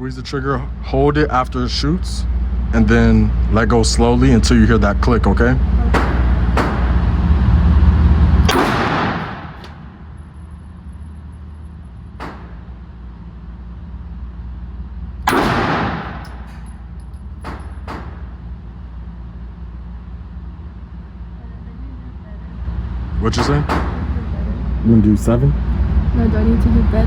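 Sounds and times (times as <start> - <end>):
pistol shots echoing: 8.5 - 9.8, 15.3 - 16.5.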